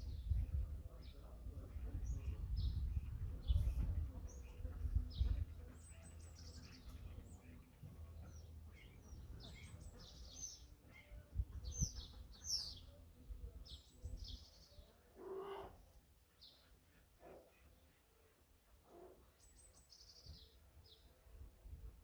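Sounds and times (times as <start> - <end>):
songbirds chirping and trilling: 0.0 - 22.0.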